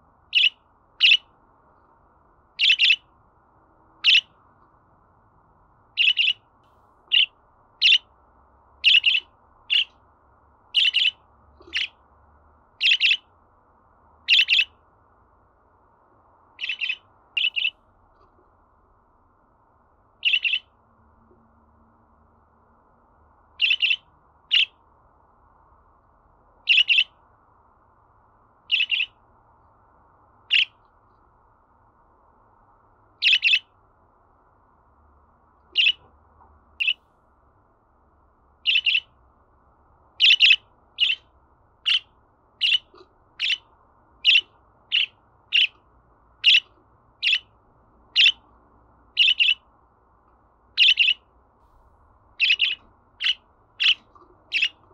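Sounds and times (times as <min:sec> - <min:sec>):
budgerigar chirping: 0:00.3 - 0:01.3, 0:02.6 - 0:03.1, 0:04.0 - 0:04.4, 0:05.9 - 0:06.5, 0:07.1 - 0:08.1, 0:08.8 - 0:10.0, 0:10.7 - 0:12.0, 0:12.8 - 0:13.3, 0:14.2 - 0:14.8, 0:16.6 - 0:17.8, 0:20.2 - 0:20.8, 0:23.6 - 0:24.8, 0:26.6 - 0:27.2, 0:28.7 - 0:29.2, 0:30.5 - 0:30.8, 0:33.2 - 0:33.8, 0:35.7 - 0:36.1, 0:36.8 - 0:37.0, 0:38.6 - 0:39.2, 0:40.2 - 0:45.8, 0:46.4 - 0:48.5, 0:49.1 - 0:49.7, 0:50.7 - 0:51.3, 0:52.4 - 0:54.9.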